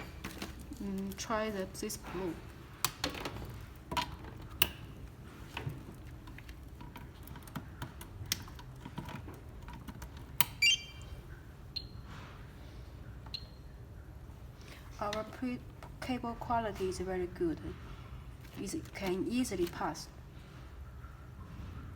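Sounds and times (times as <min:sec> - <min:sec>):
high beeps: 0:10.6 - 0:11.1
short high tones: 0:10.6 - 0:11.1.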